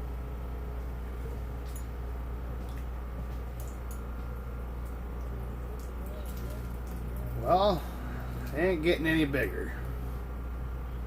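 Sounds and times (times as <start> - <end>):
portable generator humming: 0.0 - 11.0.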